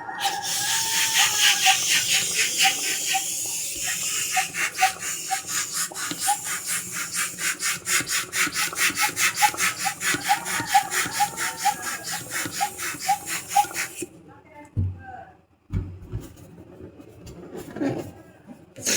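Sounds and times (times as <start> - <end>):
balloon pump rasping strokes: 0.0 - 14.1
pump squeaks: 0.0 - 14.1.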